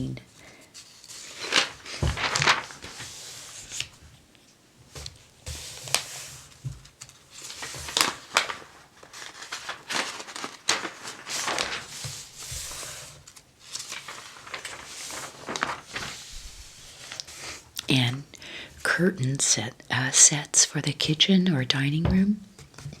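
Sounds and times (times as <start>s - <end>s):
paper pages rustling and turning: 0.0s - 18.2s.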